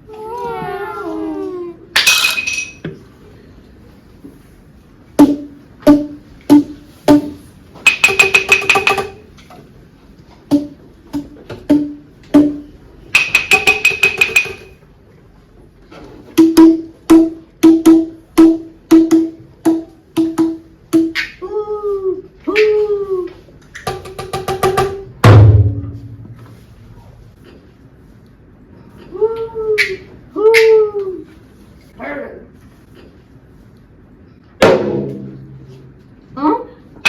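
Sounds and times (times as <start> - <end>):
wood block knocks: 5.2 - 9.2, 10.5 - 14.8.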